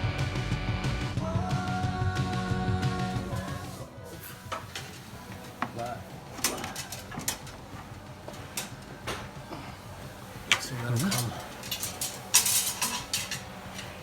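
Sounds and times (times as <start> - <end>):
metal tools clinking: 4.2 - 14.0.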